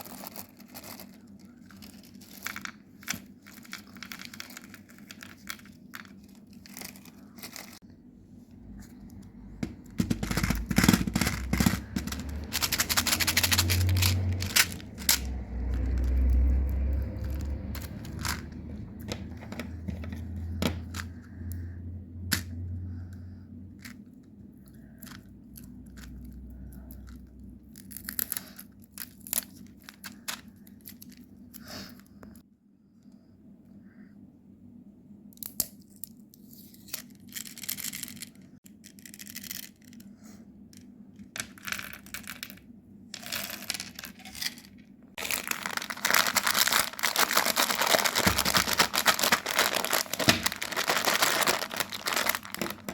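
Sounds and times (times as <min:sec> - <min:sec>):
wrappers tearing and crinkling: 0:00.0 - 0:07.8, 0:10.4 - 0:19.8, 0:45.2 - 0:52.9
low handling rumble: 0:07.1 - 0:24.7, 0:45.0 - 0:52.9.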